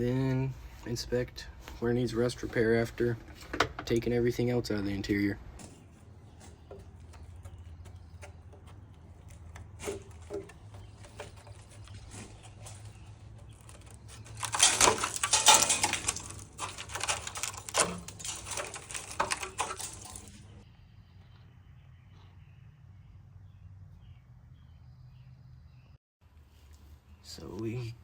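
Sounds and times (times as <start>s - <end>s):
light knocks and clinks: 5.6s - 20.6s
loose items clattering and rustling: 5.6s - 20.6s.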